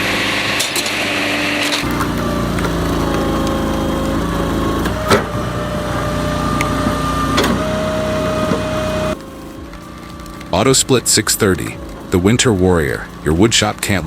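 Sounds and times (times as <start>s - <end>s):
small machine engine running: 0.0s - 14.0s.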